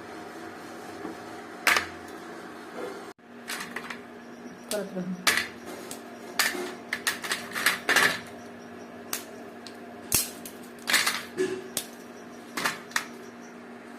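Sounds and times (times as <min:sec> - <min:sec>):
faint steady hum: 0:02.8 - 0:13.9.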